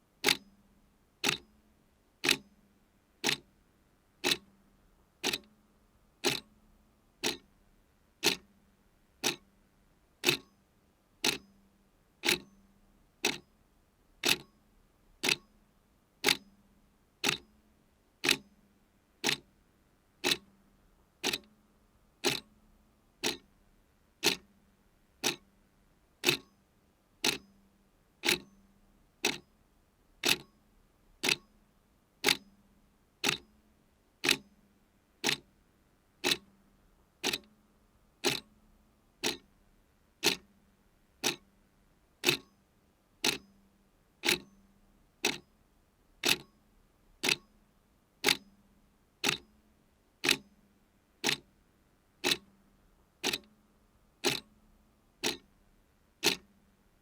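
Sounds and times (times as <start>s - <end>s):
clock ticking: 0.2s - 0.4s, 1.2s - 1.4s, 2.2s - 2.4s, 3.2s - 3.4s, 4.2s - 4.4s, 5.2s - 5.5s, 6.2s - 6.5s, 7.2s - 7.4s, 8.2s - 8.4s, 9.2s - 9.4s, 10.2s - 10.5s, 11.2s - 11.4s, 12.2s - 12.5s, 13.2s - 13.4s, 14.2s - 14.5s, 15.2s - 15.4s, 17.2s - 17.4s, 18.2s - 18.4s, 19.2s - 19.4s, 20.2s - 20.4s, 21.2s - 21.5s, 22.2s - 22.5s, 23.2s - 23.5s, 24.2s - 24.4s, 25.2s - 25.4s, 26.2s - 26.5s, 27.2s - 27.4s, 28.2s - 28.5s, 29.2s - 29.4s, 30.2s - 30.5s, 31.2s - 31.5s, 32.2s - 32.4s, 33.2s - 33.4s, 34.2s - 34.4s, 35.2s - 35.4s, 36.2s - 36.5s, 37.2s - 37.5s, 38.2s - 38.5s, 39.2s - 39.5s, 40.2s - 40.5s, 41.2s - 41.4s, 42.2s - 42.5s, 43.2s - 43.4s, 44.2s - 44.5s, 45.2s - 45.4s, 46.2s - 46.5s, 47.2s - 47.5s, 48.2s - 48.4s, 49.2s - 49.4s, 50.2s - 50.4s, 51.2s - 51.4s, 52.2s - 52.5s, 53.2s - 53.5s, 54.2s - 54.5s, 55.2s - 55.5s, 56.2s - 56.5s.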